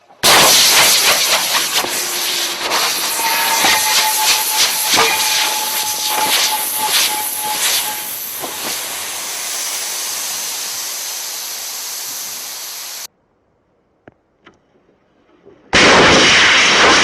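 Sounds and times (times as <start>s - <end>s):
gas hissing from cylinder: 0.2s - 13.1s
thin whistling tone: 0.6s - 13.1s.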